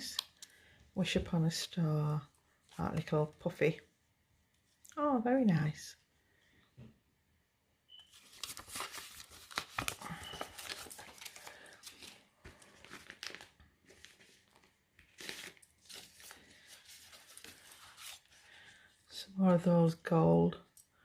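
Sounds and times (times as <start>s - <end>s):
paper and packaging crinkling: 8.1s - 18.9s.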